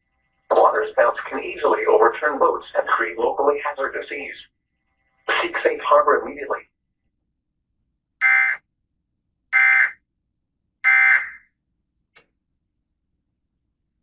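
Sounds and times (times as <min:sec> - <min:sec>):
harsh digital data tone bursts: 0:08.2 - 0:08.6.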